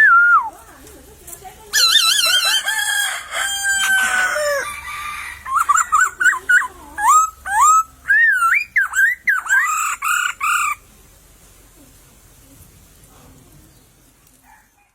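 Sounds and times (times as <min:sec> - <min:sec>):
bird singing whistled phrases: 0:07.0 - 0:10.2.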